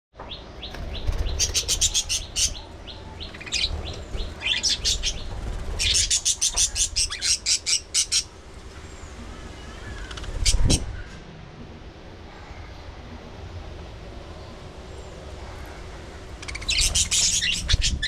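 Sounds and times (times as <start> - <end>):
budgerigars chirping: 0.8 - 2.6, 3.2 - 8.3, 16.4 - 18.0.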